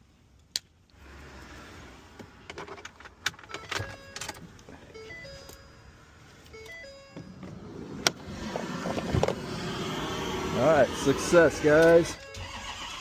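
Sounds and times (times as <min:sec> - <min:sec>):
electronic beeping tones: 0:05.0 - 0:05.8, 0:06.5 - 0:07.8.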